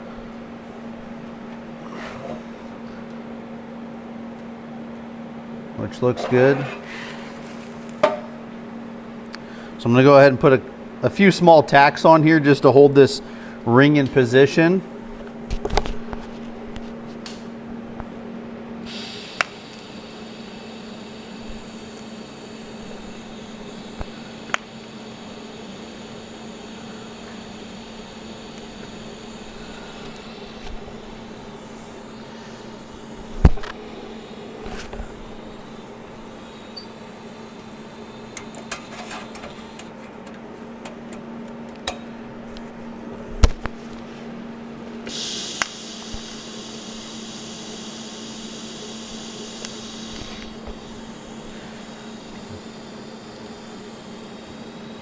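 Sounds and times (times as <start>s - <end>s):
electrical hum: 0.0s - 55.0s
welder arc hissing: 18.8s - 39.9s, 45.0s - 55.0s.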